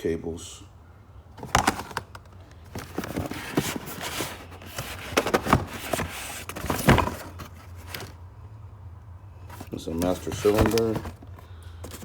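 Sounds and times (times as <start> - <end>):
steady low hum: 0.0 - 12.0
packaging rustling: 1.4 - 8.2, 9.5 - 12.0
parts clicking and clinking: 9.5 - 12.0.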